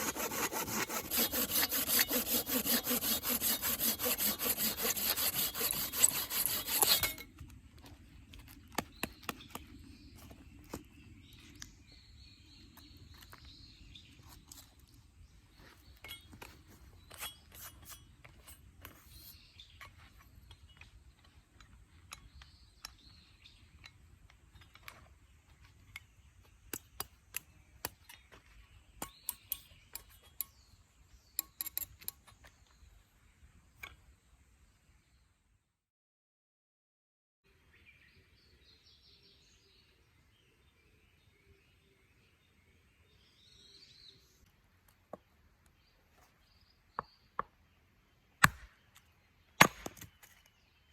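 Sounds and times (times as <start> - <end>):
saw cutting wood: 0.0 - 7.3.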